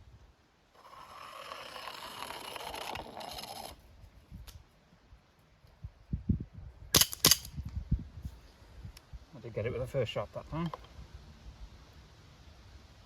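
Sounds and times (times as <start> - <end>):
clay pigeon scraping down slope: 0.7 - 3.9.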